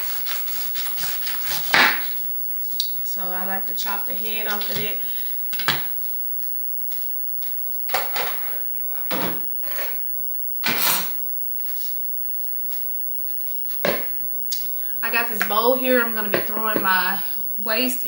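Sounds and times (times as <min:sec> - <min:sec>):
knife cutting pineapple: 0:00.0 - 0:02.2.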